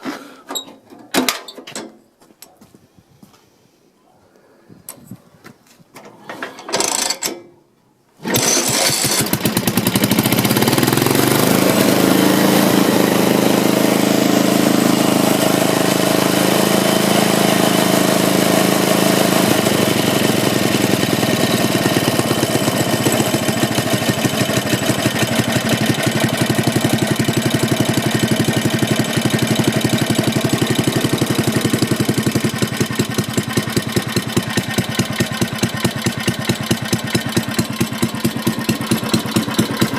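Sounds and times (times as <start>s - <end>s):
single-cylinder engine running: 8.2s - 39.9s.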